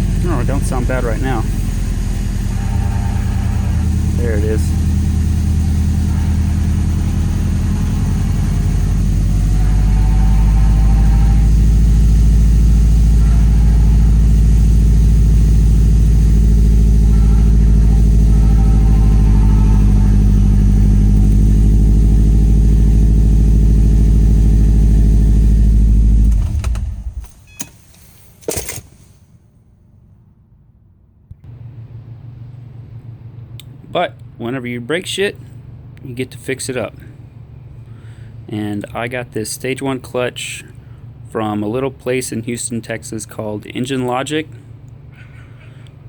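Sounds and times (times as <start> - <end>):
car engine idling: 0.0 - 27.4, 31.4 - 46.0
clutch bearing noise: 0.0 - 29.0.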